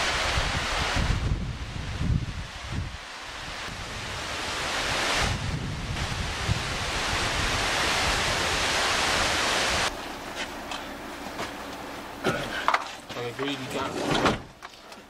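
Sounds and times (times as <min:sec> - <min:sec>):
wind on microphone: 0:00.0 - 0:09.9
waterfall roaring: 0:03.0 - 0:13.6.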